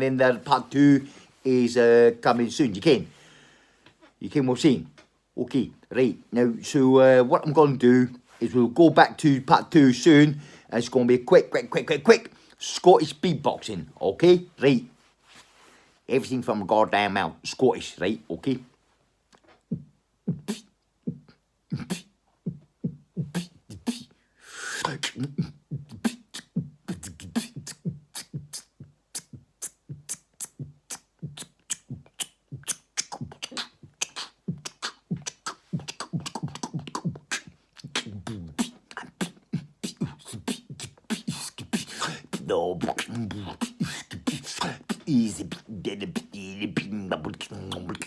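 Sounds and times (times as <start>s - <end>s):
man beatboxing: 6.2s - 14.6s, 19.4s - 48.0s.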